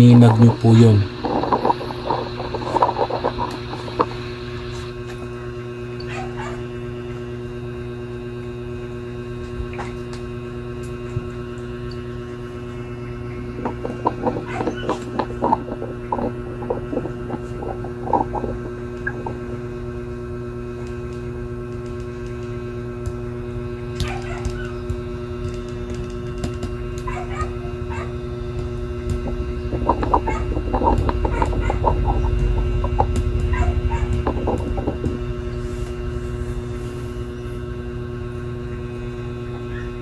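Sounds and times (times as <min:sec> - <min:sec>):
rapid animal-like calls: 0:00.0 - 0:04.9, 0:13.2 - 0:19.8, 0:27.0 - 0:37.4
electrical mains hum: 0:00.0 - 0:40.0.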